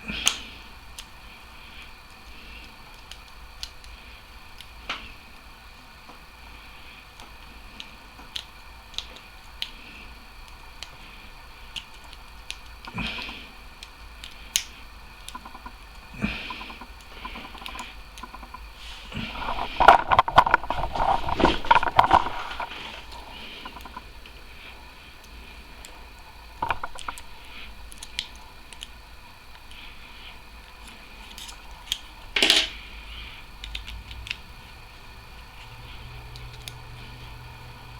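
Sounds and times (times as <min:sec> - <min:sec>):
lock pick clicking and scraping: 0:31.3 - 0:32.7.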